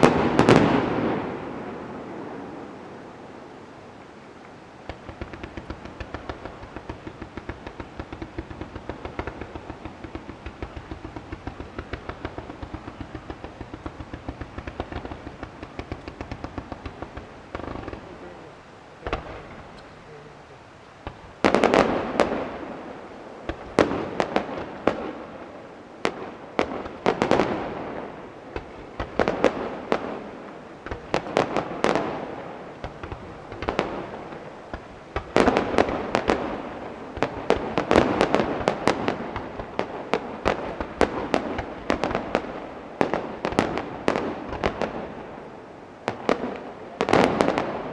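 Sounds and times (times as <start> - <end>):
aerial firework shells booming: 0.0 - 2.5, 4.8 - 20.1, 21.0 - 45.4
string of small firework pops: 4.4 - 18.3.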